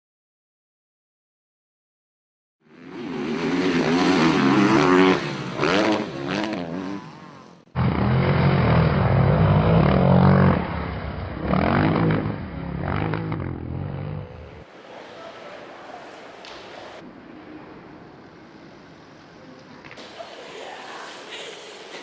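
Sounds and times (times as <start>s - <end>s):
motorcycle engine revving: 2.7s - 14.7s.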